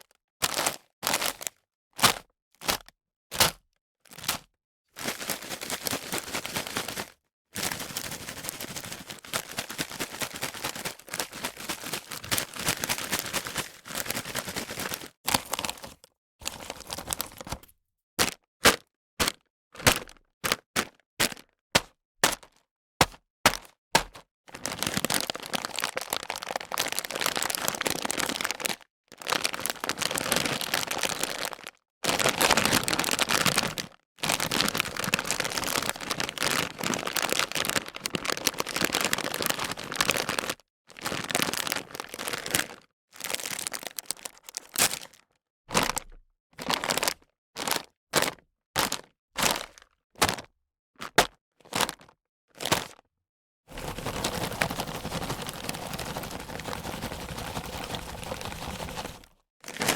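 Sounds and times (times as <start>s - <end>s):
potato chips crunching: 53.7s - 59.9s.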